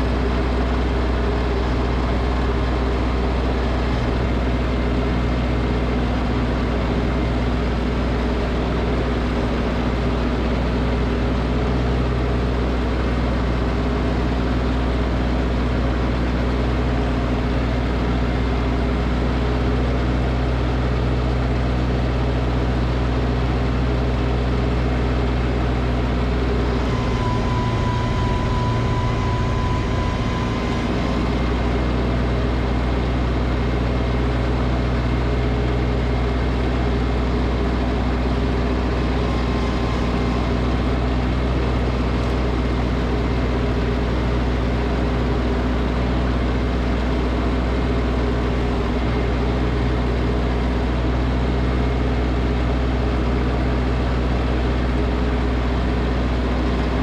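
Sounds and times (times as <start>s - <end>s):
snowblower engine running: 0.0s - 57.0s
high whine: 26.3s - 34.5s, 36.9s - 44.7s.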